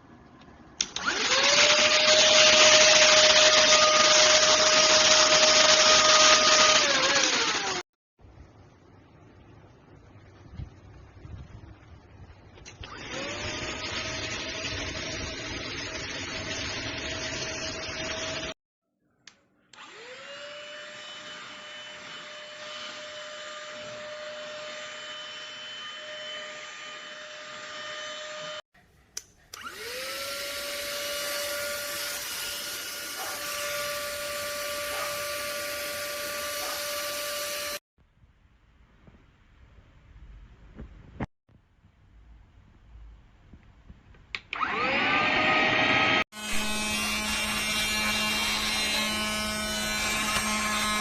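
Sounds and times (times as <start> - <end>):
handheld vacuum cleaner whining: 1.0 - 7.8, 12.8 - 18.6, 19.7 - 28.6, 29.5 - 37.8, 44.5 - 51.0.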